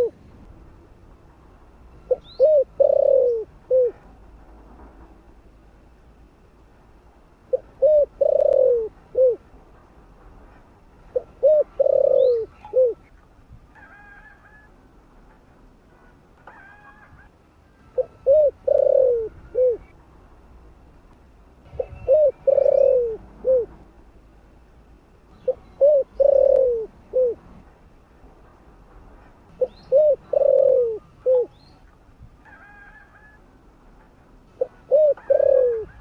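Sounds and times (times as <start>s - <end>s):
dove cooing: 0.0s - 0.2s, 2.1s - 4.0s, 7.5s - 9.4s, 11.1s - 13.1s, 17.9s - 19.9s, 21.8s - 23.8s, 25.4s - 27.5s, 29.6s - 31.6s, 34.6s - 36.0s.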